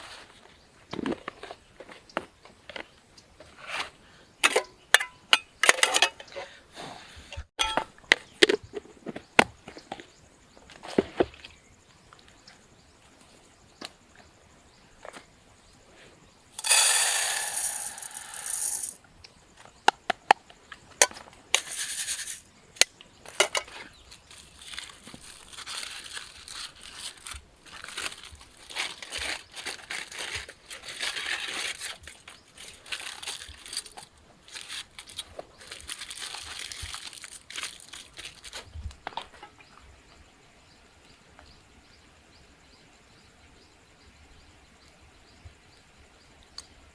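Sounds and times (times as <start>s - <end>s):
crinkling and rustling: 0.0s - 4.7s, 20.7s - 39.6s.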